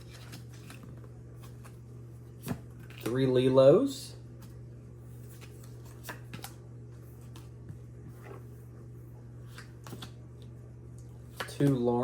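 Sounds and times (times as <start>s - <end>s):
steady low hum: 0.0s - 12.0s
cards clicking and sliding: 5.3s - 6.6s, 9.4s - 10.2s.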